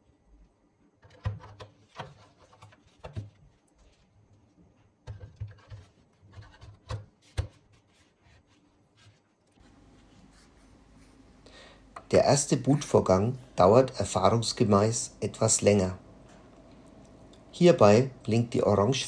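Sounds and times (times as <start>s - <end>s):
hands handling device parts: 1.0s - 4.4s.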